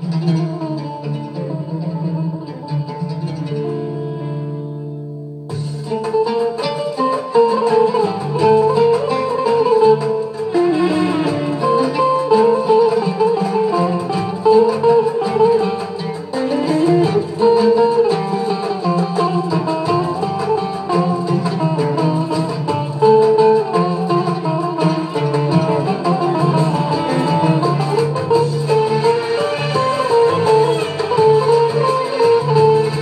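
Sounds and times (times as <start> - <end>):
plucked string melody: 0.0 - 33.0
steady bass line: 24.2 - 33.0.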